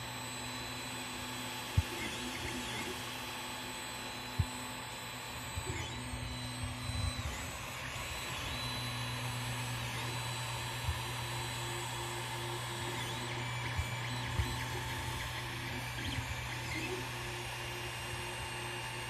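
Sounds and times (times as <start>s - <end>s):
fans humming: 0.0s - 19.0s
stepper motors whining: 0.0s - 19.0s.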